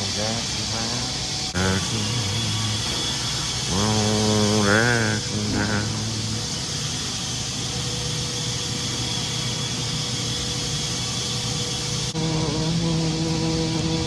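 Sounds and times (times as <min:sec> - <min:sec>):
faint constant hum: 0:00.0 - 0:14.0
steady held tones: 0:00.0 - 0:14.0
steady rushing noise: 0:00.0 - 0:14.0.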